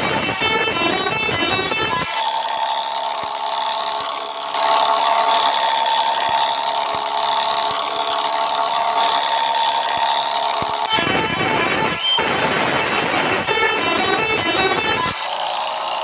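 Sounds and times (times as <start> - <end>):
bus air horn: 0.0 - 2.1, 10.8 - 15.2.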